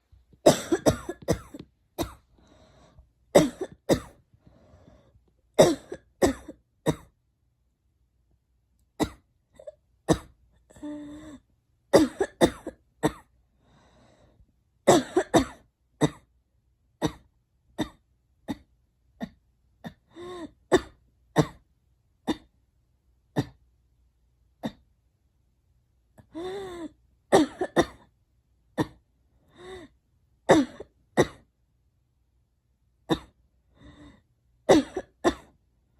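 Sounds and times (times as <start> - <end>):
girl coughing: 0.5 - 2.2, 3.4 - 4.2, 5.6 - 7.1, 11.9 - 13.3, 14.9 - 16.3, 27.3 - 28.0, 30.5 - 31.5, 34.7 - 35.6.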